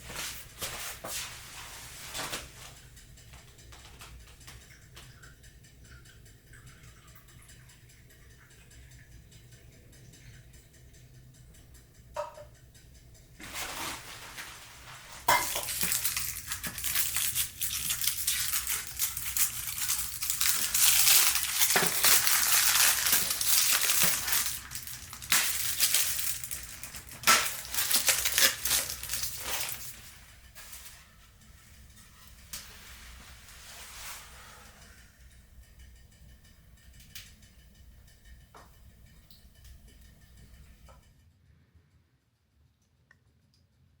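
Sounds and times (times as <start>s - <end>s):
dense crunching and crackling: 13.4s - 31.0s.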